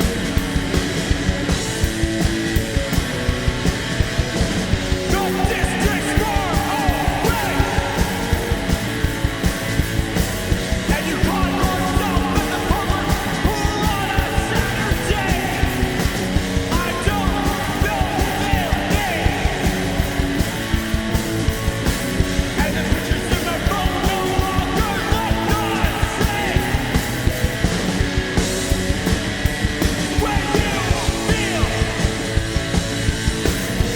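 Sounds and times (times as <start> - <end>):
bass guitar: 0.0 - 33.9
distorted electric guitars: 0.0 - 33.9
fast drums: 0.0 - 33.9
person yelling vocals: 5.1 - 8.4, 30.2 - 32.0.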